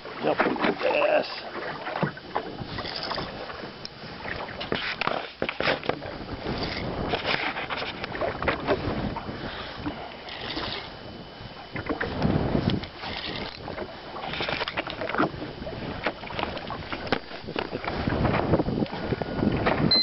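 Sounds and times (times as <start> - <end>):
water splashing around boat: 0.0 - 20.0
knocks on boat: 19.6 - 20.0.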